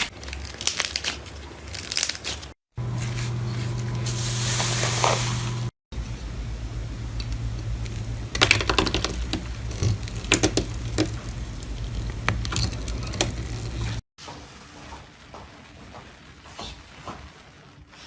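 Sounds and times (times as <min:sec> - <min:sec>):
low hum: 0:05.3 - 0:08.4.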